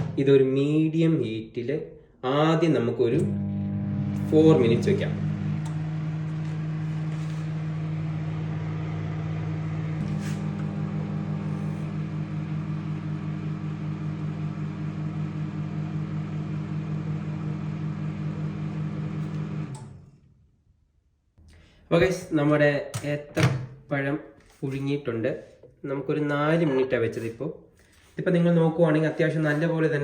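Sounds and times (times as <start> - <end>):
microwave oven humming: 3.1 - 20.1.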